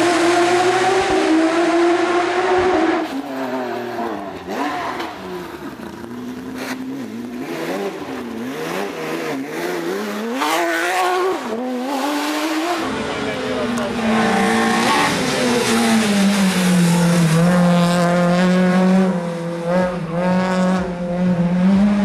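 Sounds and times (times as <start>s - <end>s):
rally car engine revving: 0.0s - 22.0s.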